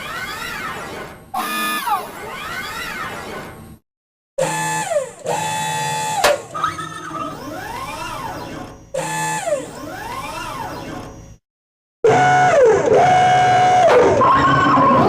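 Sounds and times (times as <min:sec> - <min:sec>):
warbling sci-fi tones: 0:01.4 - 0:03.0.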